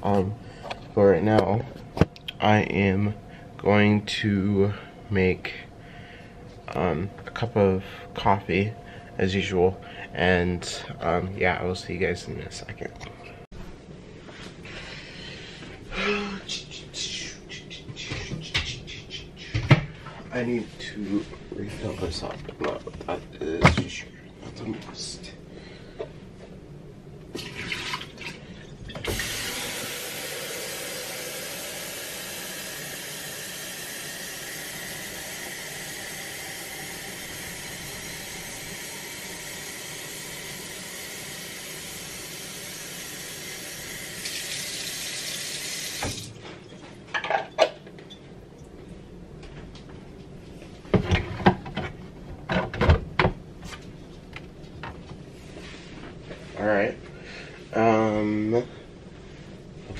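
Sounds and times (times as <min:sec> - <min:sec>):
tap running: 0:29.0 - 0:31.4.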